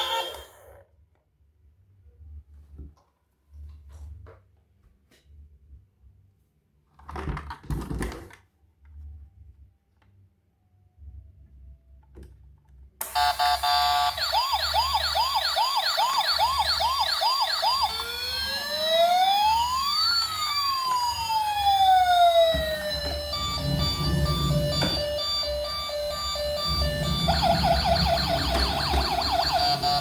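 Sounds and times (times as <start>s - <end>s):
electronic toy siren: 0.0s - 0.8s, 13.0s - 30.0s.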